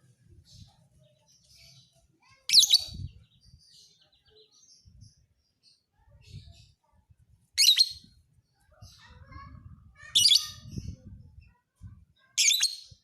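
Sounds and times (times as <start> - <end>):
soft bird chirps: 0.0 - 9.5
lovebird shrill chattering: 7.6 - 8.0.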